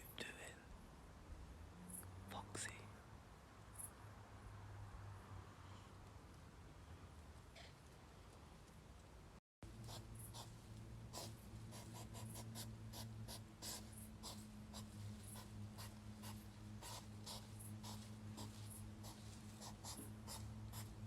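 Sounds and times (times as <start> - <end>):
steady low hum: 9.6 - 21.0.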